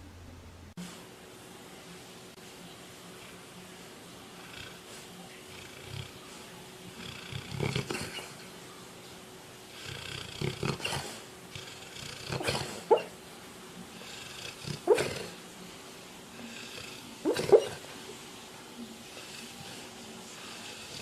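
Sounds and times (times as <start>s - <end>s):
dog snoring with squeaks: 7.0s - 8.4s, 9.8s - 13.1s, 14.0s - 15.3s, 16.5s - 17.8s.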